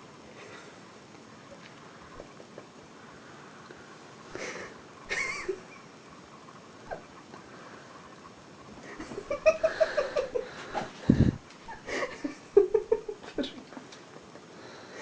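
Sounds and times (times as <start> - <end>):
person laughing: 4.4 - 5.8, 8.9 - 14.4.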